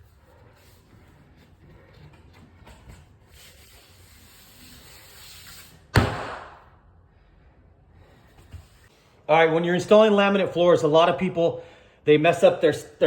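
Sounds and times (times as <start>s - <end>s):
loud sharp knock: 6.0s - 6.7s.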